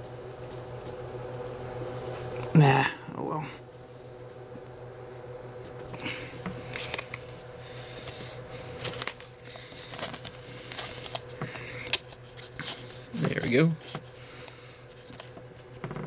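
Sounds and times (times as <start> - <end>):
steady low hum: 0.0 - 16.0
cards and plastic sleeves rustling: 5.8 - 16.0.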